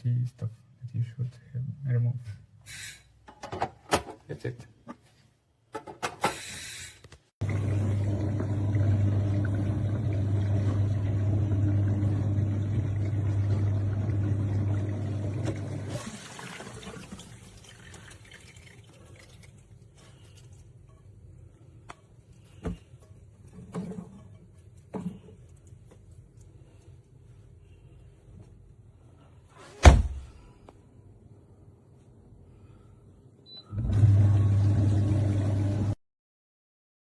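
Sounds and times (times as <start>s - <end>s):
dishwasher pump humming: 7.4s - 19.4s, 33.7s - 36.0s
water sloshing in dishwasher: 7.4s - 20.5s.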